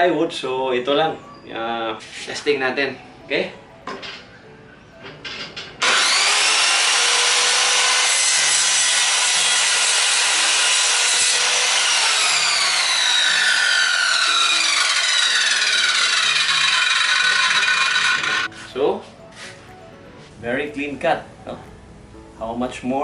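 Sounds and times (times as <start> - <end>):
circular saw cutting plywood: 5.8 - 18.6.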